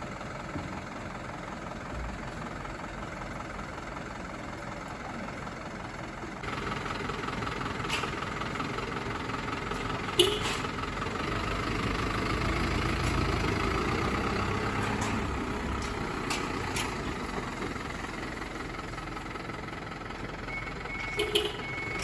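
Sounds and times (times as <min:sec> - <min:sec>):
fire engine idling: 0:00.0 - 0:22.0.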